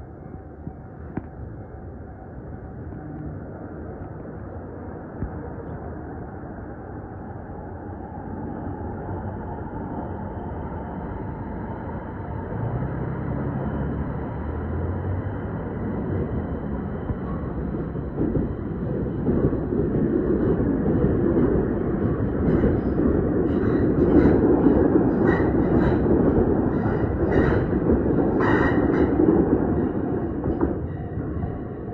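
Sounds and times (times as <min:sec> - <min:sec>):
electric train rumbling past: 0:00.0 - 0:31.9
wheels clacking over rail joints: 0:16.8 - 0:31.9.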